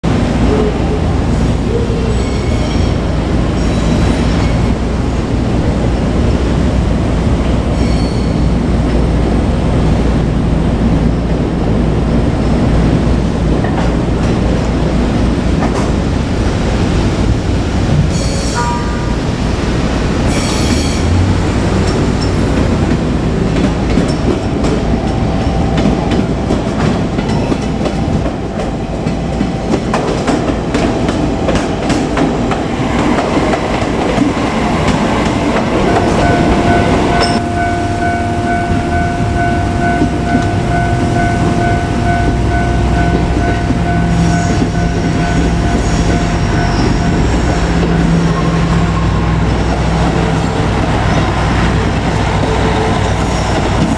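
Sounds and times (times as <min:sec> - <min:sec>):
train wheels clicking over rail joints: 0:19.5 - 0:37.7
steady high ringing tone: 0:35.8 - 0:51.3.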